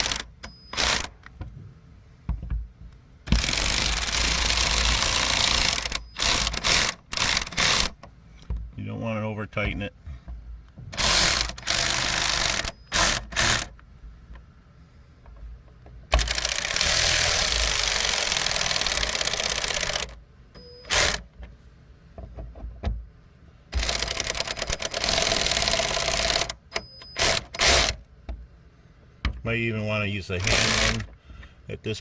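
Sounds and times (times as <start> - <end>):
power driver running screws: 0.0 - 1.1, 3.3 - 8.0, 11.0 - 13.7, 16.2 - 21.2, 23.8 - 28.0, 30.4 - 31.1.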